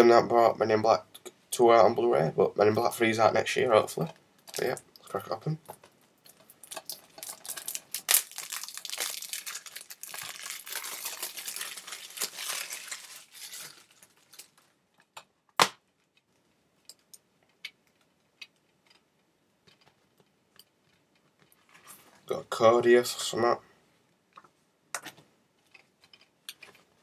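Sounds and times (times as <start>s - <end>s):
plastic wrap tearing and crumpling: 6.4s - 14.8s.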